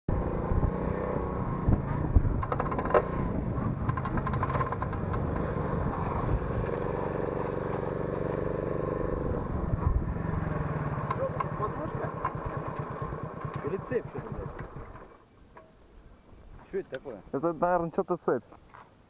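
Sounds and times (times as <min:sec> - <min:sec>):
moped engine running: 0:00.1 - 0:15.2.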